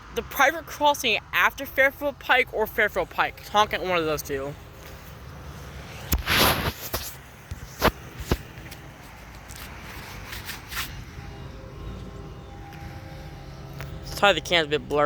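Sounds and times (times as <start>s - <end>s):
rubbing swish: 5.9s - 11.0s.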